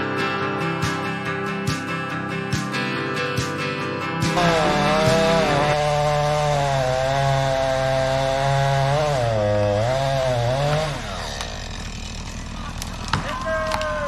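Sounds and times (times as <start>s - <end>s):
chainsaw cutting wood: 4.3s - 14.0s.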